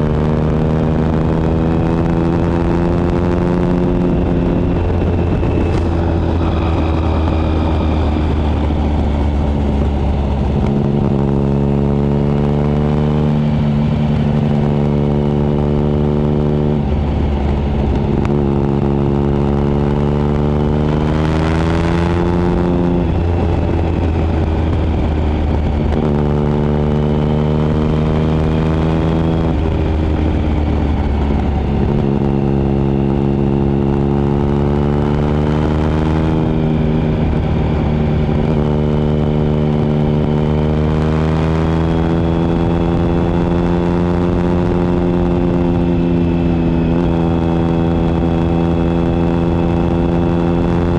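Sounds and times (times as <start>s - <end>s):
motorcycle engine revving: 0.0s - 50.9s.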